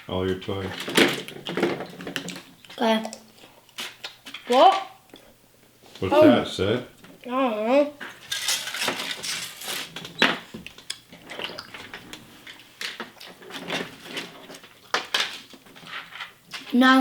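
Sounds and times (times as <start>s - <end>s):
plastic toy parts clattering: 0.7s - 2.5s, 8.2s - 10.1s, 13.6s - 16.7s.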